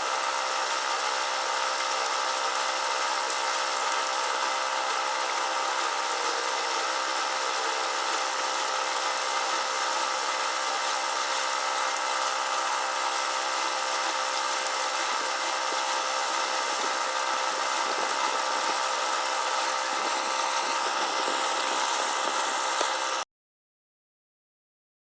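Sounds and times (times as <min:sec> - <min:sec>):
steady mechanical hum: 0:00.0 - 0:23.2.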